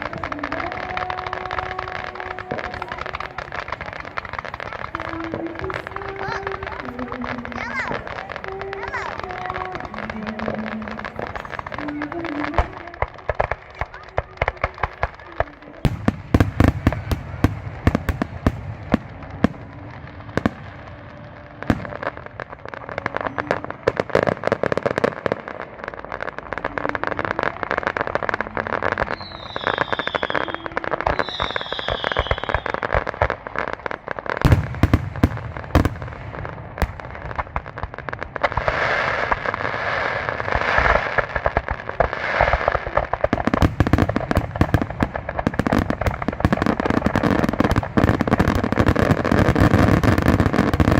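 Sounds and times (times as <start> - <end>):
fireworks crackling: 0.0 - 50.9
fireworks popping and banging: 0.0 - 50.9
falling firework whistles: 26.6 - 36.4.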